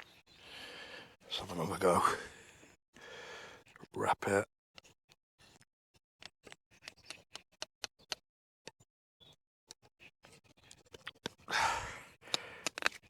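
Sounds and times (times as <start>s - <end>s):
wooden bow drill clicking: 6.2s - 8.2s, 12.2s - 13.0s.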